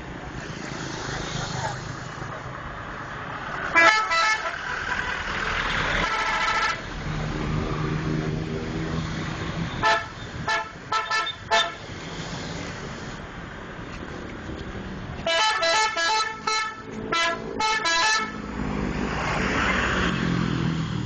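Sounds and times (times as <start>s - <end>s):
multi-tone bus air horn: 3.7s - 5.3s, 5.9s - 6.8s, 9.8s - 11.8s, 15.2s - 18.4s.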